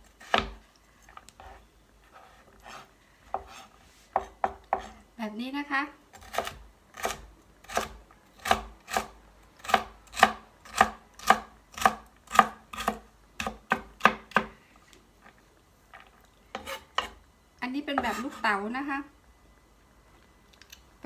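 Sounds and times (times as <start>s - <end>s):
knife chopping on cutting board: 0.2s - 0.6s, 2.2s - 5.0s, 6.2s - 14.5s.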